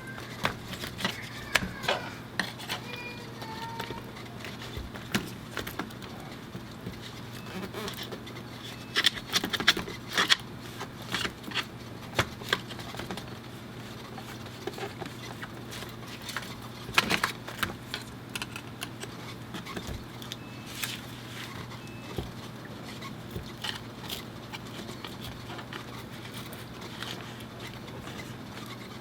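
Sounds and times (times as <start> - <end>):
small tools clicking and tapping: 14.2 - 21.0.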